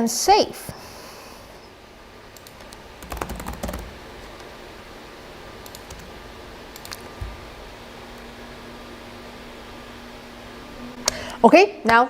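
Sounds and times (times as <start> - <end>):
computer keyboard and mouse clicks: 2.4 - 3.9, 6.7 - 7.1.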